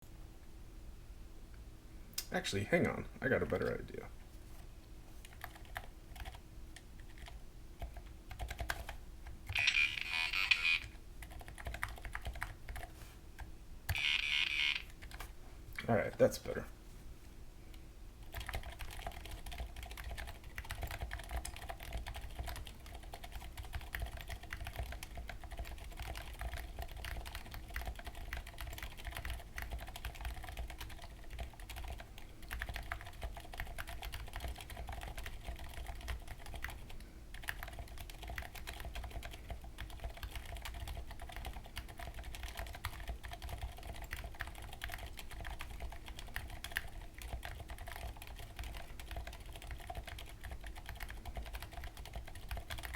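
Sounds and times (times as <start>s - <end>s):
mechanical keyboard typing: 5.2s - 6.4s, 7.0s - 15.3s, 18.3s - 52.9s.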